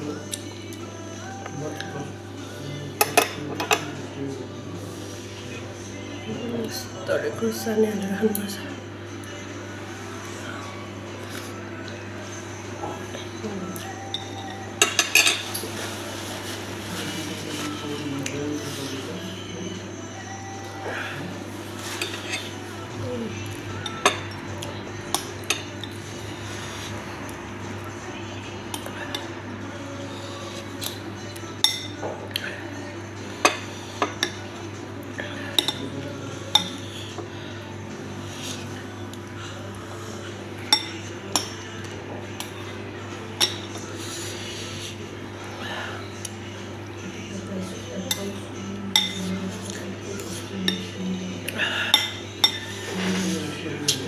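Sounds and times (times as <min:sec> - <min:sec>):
cutlery clinking against dishes: 0:03.0 - 0:04.0, 0:13.8 - 0:15.9, 0:21.9 - 0:22.6, 0:23.8 - 0:24.4, 0:25.1 - 0:26.0, 0:30.8 - 0:32.5, 0:33.4 - 0:34.5, 0:35.5 - 0:37.3, 0:40.7 - 0:42.6, 0:43.3 - 0:43.9, 0:48.0 - 0:54.0
spoon clinking against plate: 0:14.0 - 0:15.6, 0:48.9 - 0:49.3, 0:51.9 - 0:52.8.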